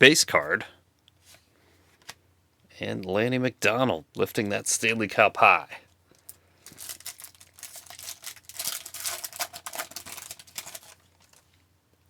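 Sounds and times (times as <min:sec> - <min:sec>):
wrapper tearing and crinkling: 0:06.6 - 0:11.6.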